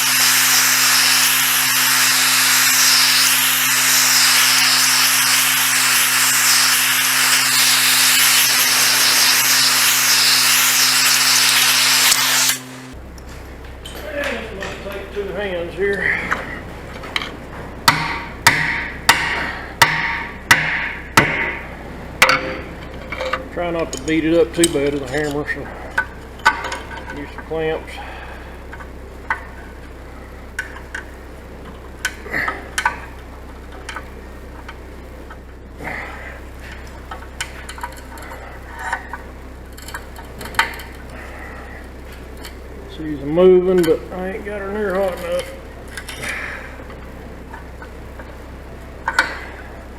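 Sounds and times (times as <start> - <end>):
gas torch flame hissing: 0.0 - 13.0
steady low hum: 0.0 - 49.9
knocks on metal: 17.9 - 21.6
metal clamps clinking: 22.2 - 27.5.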